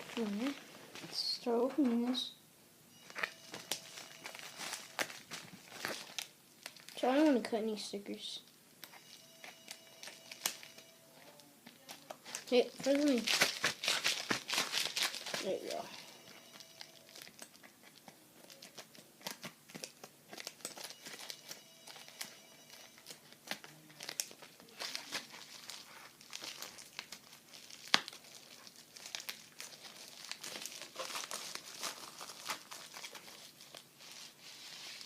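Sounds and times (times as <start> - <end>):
packaging crinkling and rustling: 0.0 - 1.2, 3.0 - 7.2, 9.0 - 35.0
packaging tearing: 3.1 - 7.0, 11.8 - 15.8, 23.0 - 34.2.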